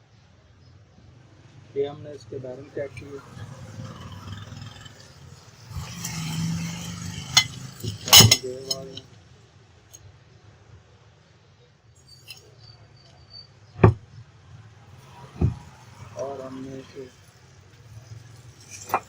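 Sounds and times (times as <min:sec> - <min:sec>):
metal scraping rub: 0:03.8 - 0:09.0, 0:15.0 - 0:19.0
metallic clinks and knocks: 0:05.5 - 0:09.0, 0:12.0 - 0:12.5, 0:15.0 - 0:19.0.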